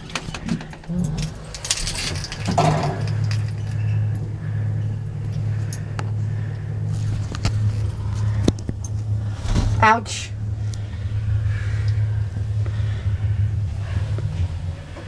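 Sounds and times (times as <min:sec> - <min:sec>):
clicks and clatters: 0:00.0 - 0:04.2
lift machinery humming: 0:00.0 - 0:15.0.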